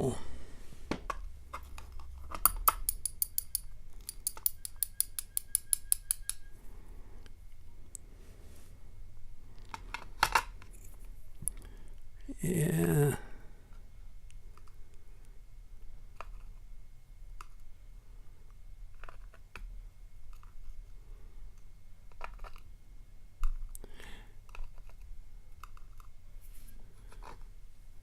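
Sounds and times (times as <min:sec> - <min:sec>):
small metallic clicks and taps: 0:01.1 - 0:06.5.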